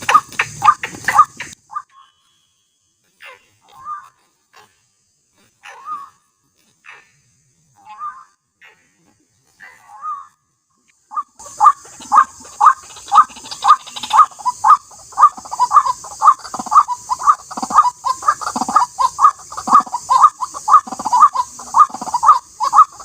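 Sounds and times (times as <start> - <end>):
waterhen croaking calls: 0.0 - 2.4, 5.6 - 6.2, 7.8 - 8.8, 9.6 - 23.0.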